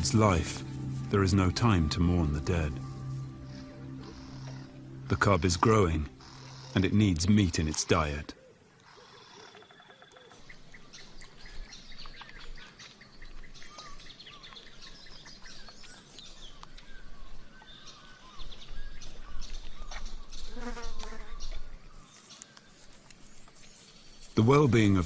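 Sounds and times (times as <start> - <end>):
lower animal call: 0.0 - 6.9
low rumble: 0.0 - 7.7
birds chirping and calling: 0.0 - 9.4
insects buzzing: 2.6 - 8.2.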